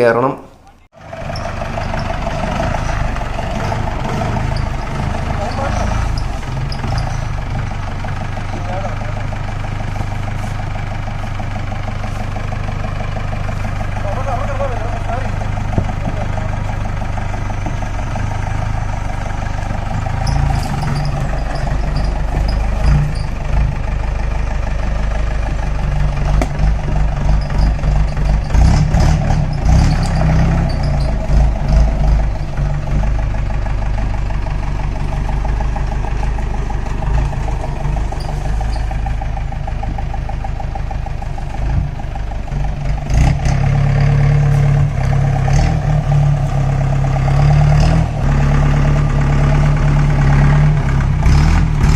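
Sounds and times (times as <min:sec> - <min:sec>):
jeep engine running: 0:00.0 - 0:51.9
knocks and rattles: 0:01.2 - 0:09.6, 0:15.1 - 0:23.9, 0:25.4 - 0:34.4.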